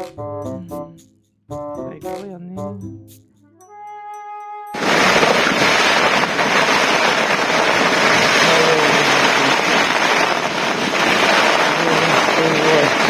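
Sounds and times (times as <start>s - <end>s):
held musical note: 0.0s - 4.8s
wind and rain storm: 4.8s - 13.0s.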